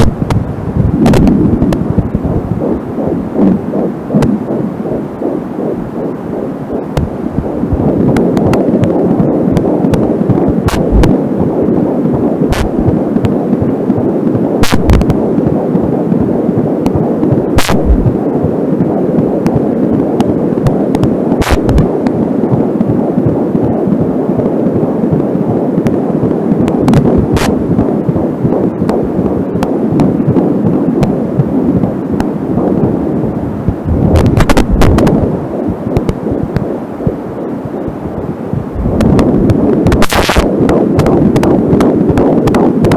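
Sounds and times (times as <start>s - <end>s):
pulsing doppler heartbeat: 0.0s - 42.9s
sharp static pops: 0.0s - 42.9s.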